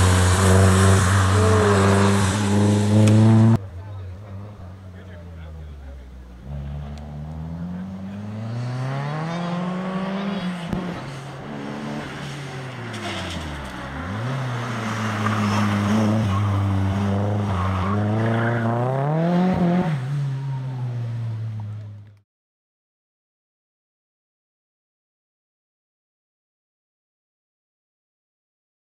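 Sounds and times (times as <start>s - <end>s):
rally car engine revving: 0.0s - 22.1s.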